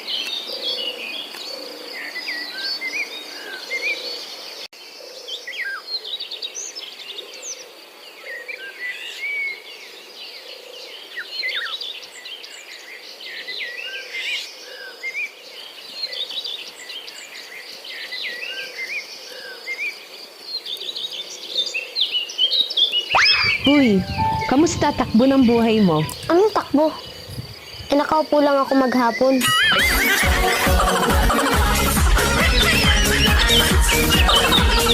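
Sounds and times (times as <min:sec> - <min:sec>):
birds chirping: 0:23.0 - 0:34.9
soft low repeating note: 0:23.5 - 0:26.1.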